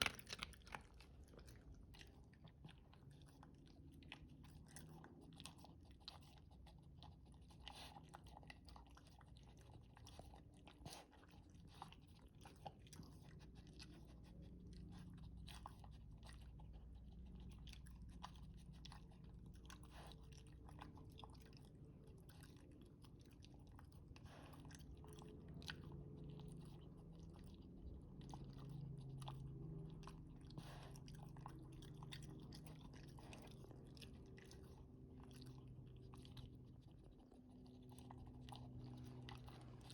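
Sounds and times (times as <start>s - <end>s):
dog chewing food: 0.0s - 39.9s.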